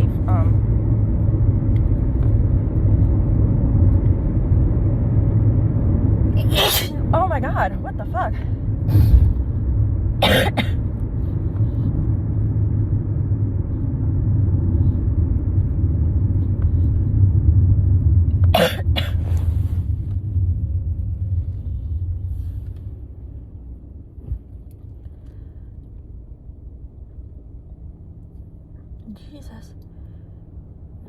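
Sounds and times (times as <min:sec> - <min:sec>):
car road noise rumble: 0:00.0 - 0:31.0
woman sneezing: 0:06.4 - 0:07.1.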